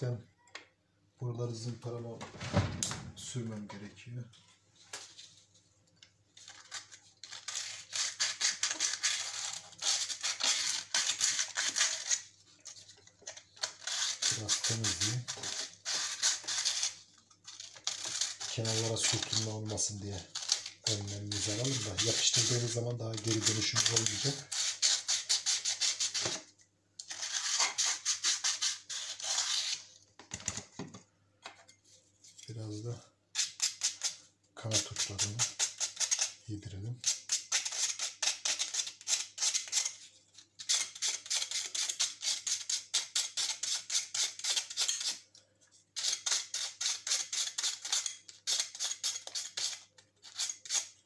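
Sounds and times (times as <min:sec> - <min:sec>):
sandpaper scraping plastic: 0:06.4 - 0:26.4, 0:27.0 - 0:29.8, 0:37.0 - 0:45.2, 0:46.0 - 0:51.0.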